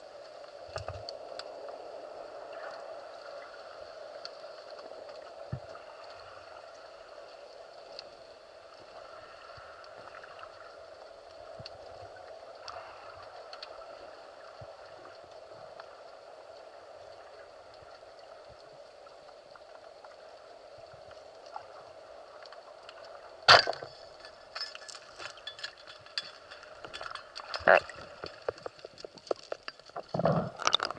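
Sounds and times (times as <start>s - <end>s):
small clicks and ticks: 0.0s - 30.9s
underwater hiss: 0.2s - 18.8s.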